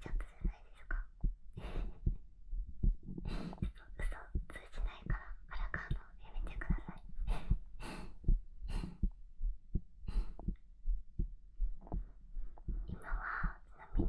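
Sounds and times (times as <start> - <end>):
soft breathy hiss: 0.0 - 2.1, 3.2 - 9.1, 12.4 - 14.0
heartbeat pulse: 0.0 - 14.0.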